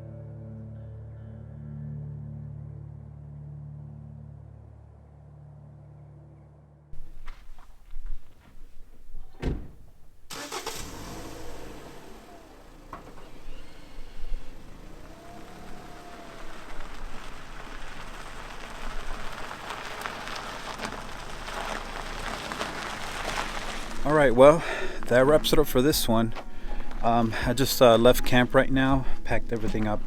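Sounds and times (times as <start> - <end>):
car engine and road noise: 7.0 - 30.0.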